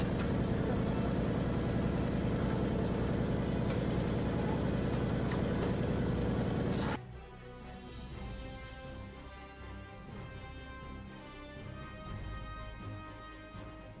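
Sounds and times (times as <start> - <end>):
truck engine idling: 0.0 - 7.0.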